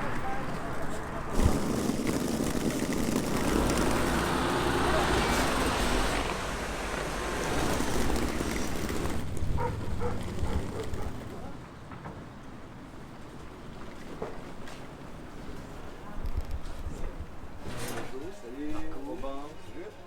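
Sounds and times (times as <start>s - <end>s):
background voices: 0.0s - 11.8s
road traffic going by: 0.0s - 18.3s.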